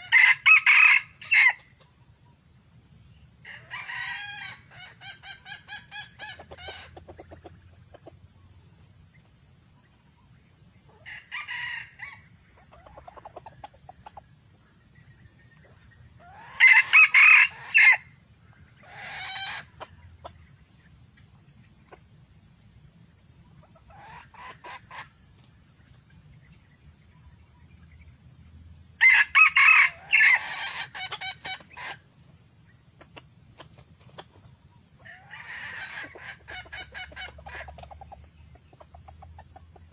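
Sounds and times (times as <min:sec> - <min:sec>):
roosters crowing: 0:00.0 - 0:01.7, 0:03.4 - 0:07.3, 0:11.0 - 0:13.2, 0:16.2 - 0:18.1, 0:18.8 - 0:19.9, 0:29.0 - 0:32.0, 0:35.0 - 0:37.9.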